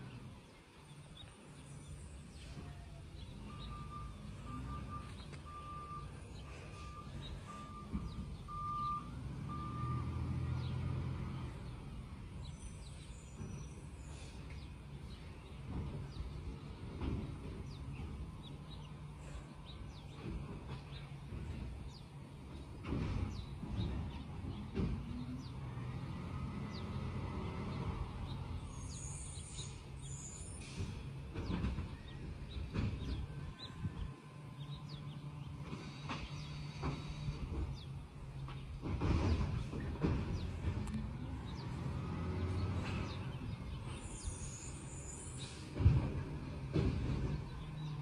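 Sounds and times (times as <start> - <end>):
birds chirping: 0.0 - 48.0
diesel engine running: 0.0 - 48.0
backup alarm beeps: 3.4 - 10.2.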